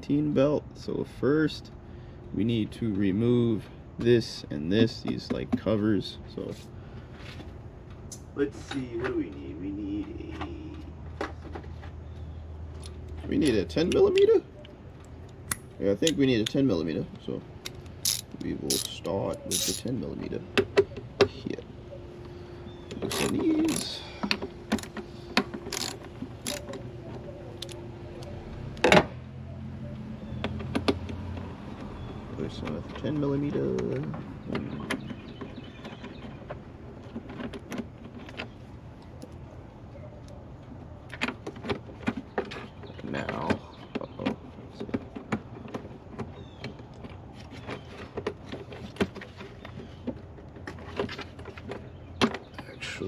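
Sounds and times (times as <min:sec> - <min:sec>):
socket ratchet clicking: 0:17.6 - 0:19.9, 0:23.0 - 0:24.0, 0:25.6 - 0:26.8
loose metal parts handled: 0:17.6 - 0:20.3, 0:22.9 - 0:27.8.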